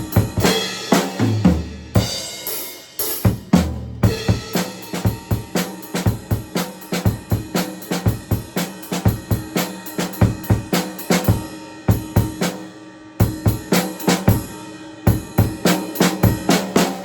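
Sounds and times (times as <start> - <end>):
drum kit playing a groove: 0.0 - 17.0.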